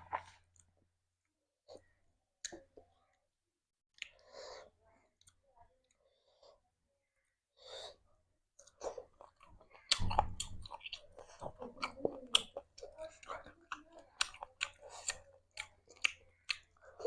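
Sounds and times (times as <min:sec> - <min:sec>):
chewing with mouth clicks: 0:08.6 - 0:17.0.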